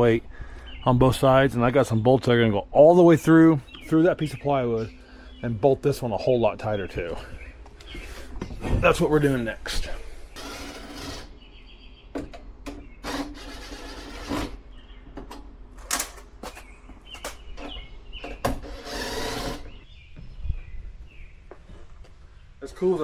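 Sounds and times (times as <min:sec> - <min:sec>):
power tool whirring: 0:10.2 - 0:11.4, 0:13.0 - 0:14.6, 0:18.5 - 0:19.8
sharp clicks and knocks: 0:15.1 - 0:18.8.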